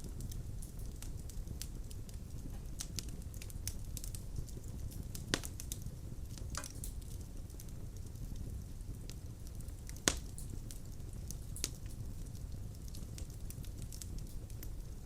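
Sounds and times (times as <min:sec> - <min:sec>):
wood fire crackling: 0:00.0 - 0:15.0.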